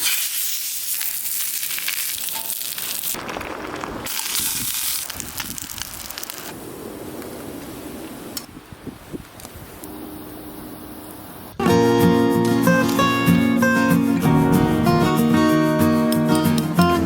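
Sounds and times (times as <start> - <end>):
food frying: 0.0 - 6.6
wood fire crackling: 0.0 - 11.6, 12.7 - 17.0.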